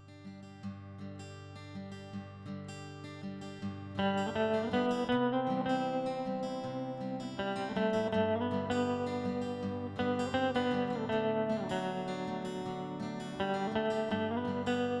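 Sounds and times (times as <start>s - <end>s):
strummed acoustic guitar: 0.0s - 15.0s.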